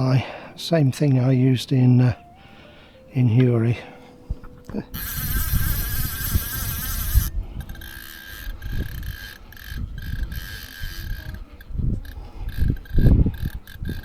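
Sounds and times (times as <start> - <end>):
wind rumble on microphone: 4.3 - 14.0
fly reel ratchet buzzing: 4.9 - 14.0.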